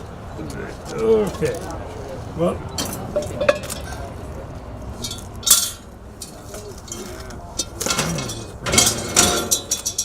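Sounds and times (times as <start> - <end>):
cookware clinking: 2.8 - 3.9.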